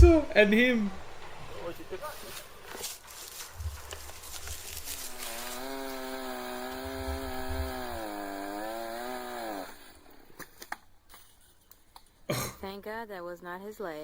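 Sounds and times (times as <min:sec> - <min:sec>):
chainsaw running at high speed: 0:04.0 - 0:10.4.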